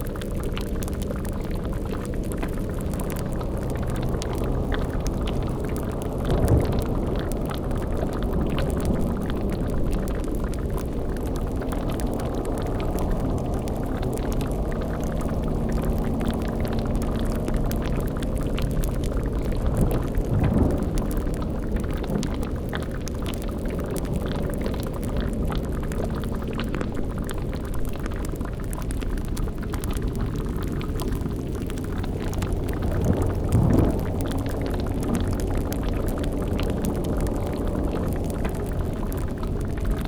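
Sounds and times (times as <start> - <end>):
bubbling with crackling: 0.0 - 40.0
low rumbling drone: 0.0 - 40.0
eerie low tones: 0.5 - 40.0
low growl: 32.2 - 37.6.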